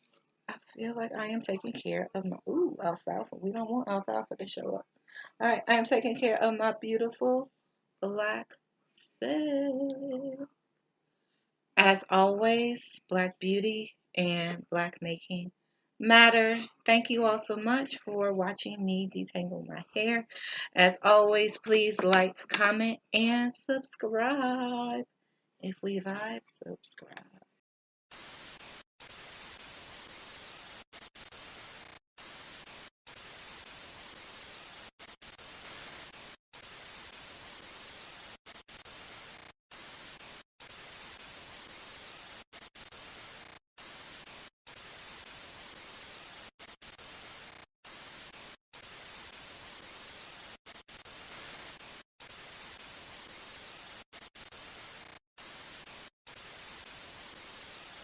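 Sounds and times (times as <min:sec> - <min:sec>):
static hiss: 0:28.1 - 0:58.0.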